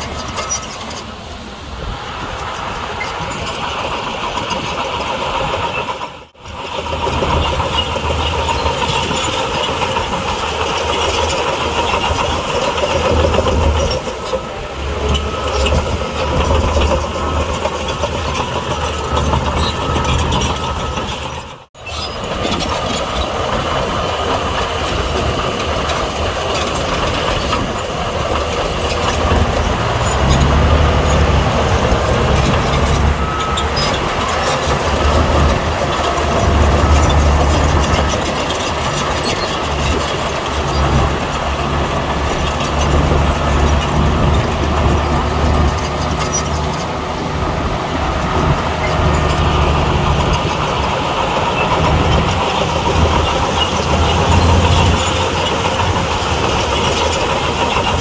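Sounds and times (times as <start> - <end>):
bulldozer diesel engine under load: 0.0 - 58.0.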